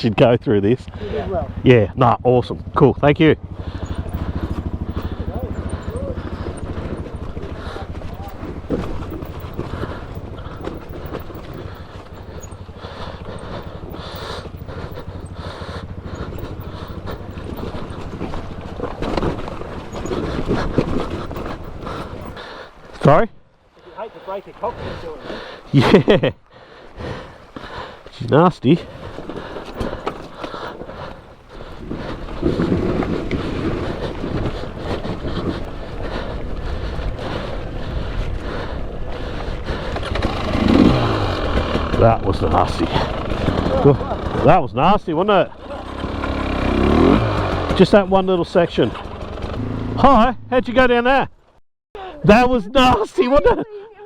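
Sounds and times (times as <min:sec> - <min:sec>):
two-stroke dirt bike engine running: 0:00.0 - 0:23.2, 0:23.9 - 0:26.4, 0:28.6 - 0:50.6
wind buffeting microphone: 0:28.9 - 0:44.4.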